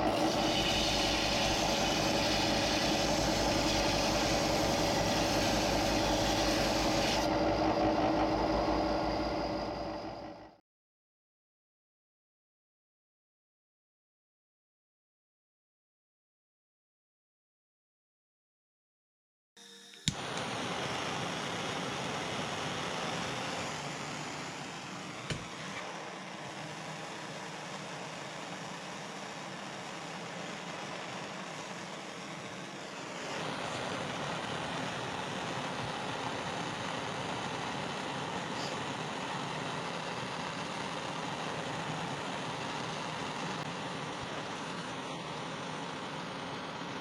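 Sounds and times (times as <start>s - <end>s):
power tool grinding: 0.0s - 8.4s
machine rushing noise: 0.0s - 10.5s.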